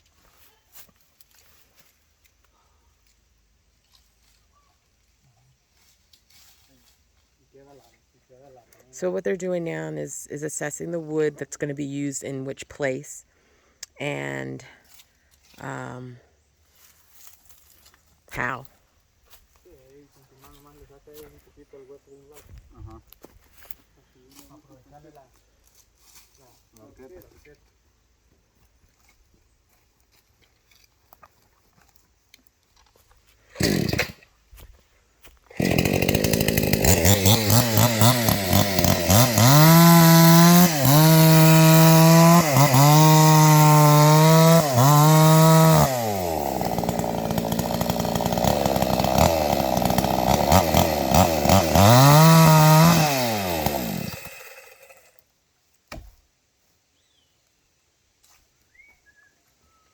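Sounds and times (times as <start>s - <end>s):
chainsaw revving: 33.5s - 34.3s, 35.5s - 55.2s.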